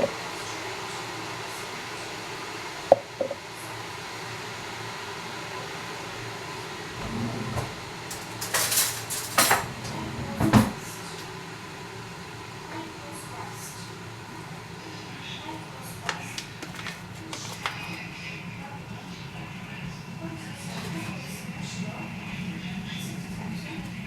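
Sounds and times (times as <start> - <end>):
hard objects clattering: 7.0 - 10.8.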